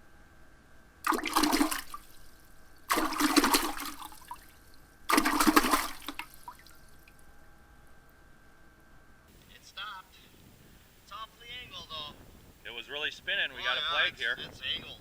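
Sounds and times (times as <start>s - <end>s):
water splashing: 1.1s - 7.2s.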